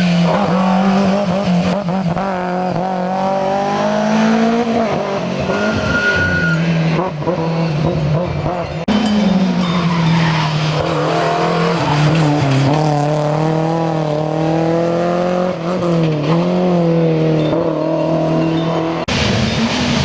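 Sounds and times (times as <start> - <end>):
rally car engine at high revs: 0.0 - 20.0
tyre squeal and skidding: 5.4 - 12.9.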